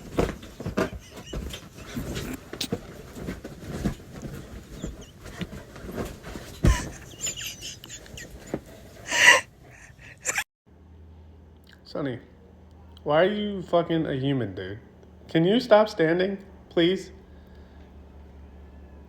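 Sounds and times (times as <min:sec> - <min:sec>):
scuffling noises: 0:00.0 - 0:09.3
low steady hum: 0:00.0 - 0:19.0.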